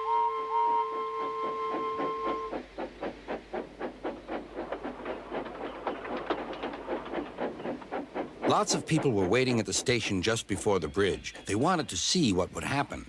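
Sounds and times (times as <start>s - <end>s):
steam locomotive chuffing: 0.0s - 13.0s
steam hiss: 6.4s - 10.4s.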